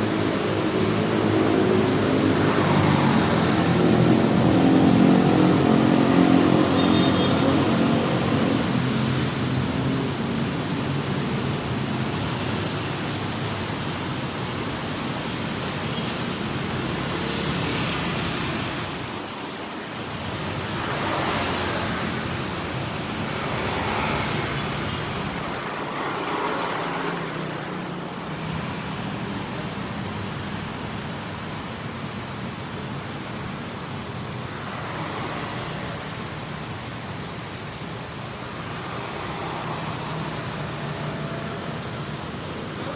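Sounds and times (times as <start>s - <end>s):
motorcycle and car engines: 0.0s - 32.8s
vehicles passing close by: 0.0s - 42.9s.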